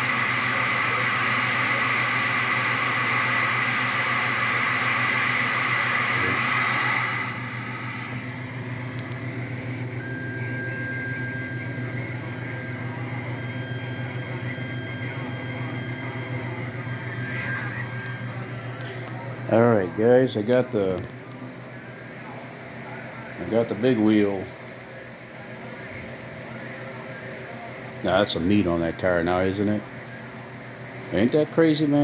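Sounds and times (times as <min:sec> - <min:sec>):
electrical hum with whining tones: 0:00.0 - 0:32.0
radio static hiss: 0:00.0 - 0:32.0.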